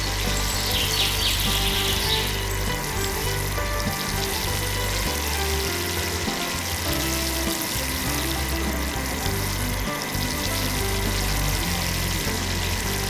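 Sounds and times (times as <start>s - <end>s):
background music with low notes: 0.0s - 13.0s
steady hiss: 0.0s - 13.0s.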